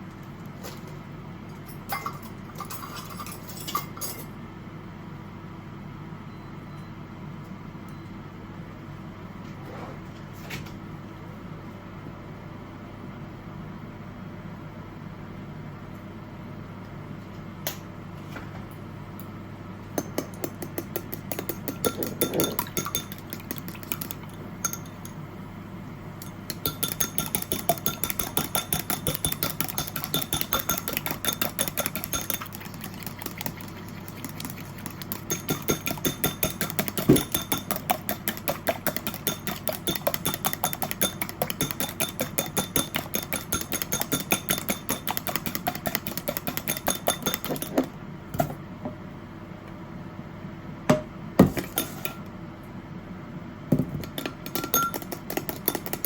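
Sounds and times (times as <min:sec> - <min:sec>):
rapid kitchen chopping strokes: 0:20.4 - 0:24.3, 0:26.6 - 0:47.9, 0:54.5 - 0:56.0.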